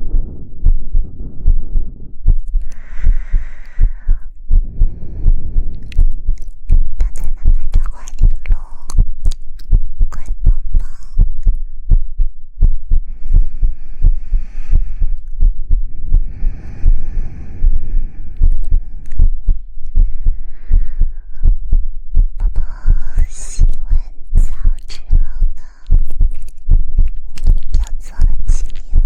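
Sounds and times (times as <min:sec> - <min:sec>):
breathy hushing or rubbing: 0:00.0 - 0:06.6, 0:13.1 - 0:21.5.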